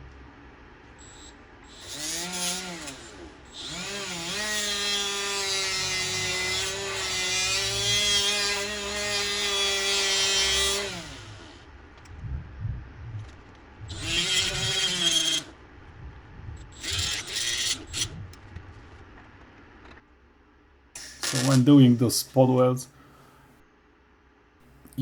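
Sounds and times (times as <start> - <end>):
power tool motor whining: 1.0 - 11.6, 13.9 - 15.5, 16.7 - 18.1, 21.0 - 21.6.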